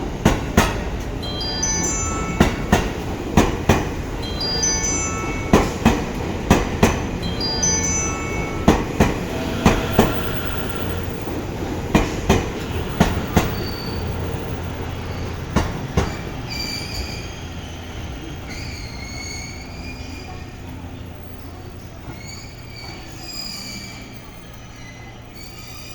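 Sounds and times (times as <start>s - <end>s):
train wheels clacking on rail joints: 0.0s - 1.3s, 2.1s - 4.6s, 5.4s - 7.6s, 8.2s - 24.1s
high wavering brake squeals: 7.3s - 12.0s, 12.6s - 20.6s, 21.3s - 25.9s.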